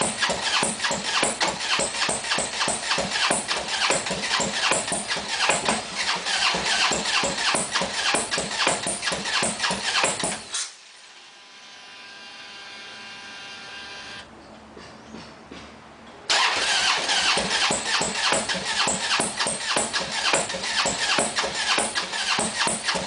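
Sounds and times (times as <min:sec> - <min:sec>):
motorcycle engine cranking: 0:00.0 - 0:10.8, 0:16.3 - 0:23.0.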